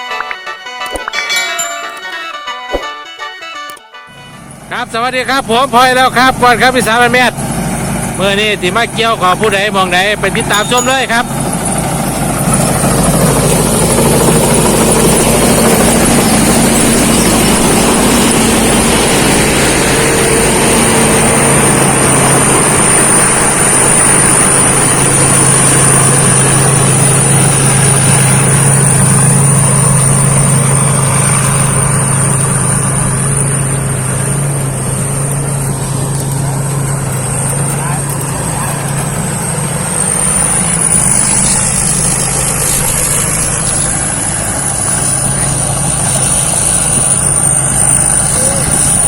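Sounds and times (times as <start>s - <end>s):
combine harvester drone: 0.0s - 49.0s
thin high whine: 10.2s - 11.8s.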